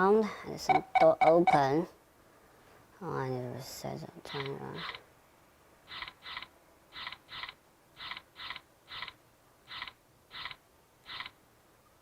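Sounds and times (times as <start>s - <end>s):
short electronic alarm beeps: 0.7s - 1.6s.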